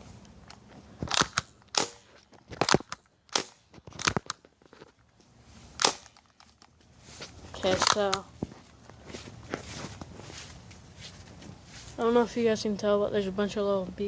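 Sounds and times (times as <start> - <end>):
airsoft gun shots: 1.0 - 4.2.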